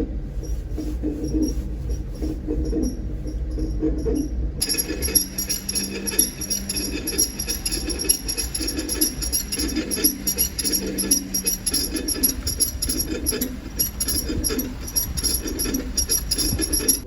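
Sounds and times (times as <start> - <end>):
high metallic ringing: 1.4 - 17.0
brake scraping and jingling: 4.6 - 17.0.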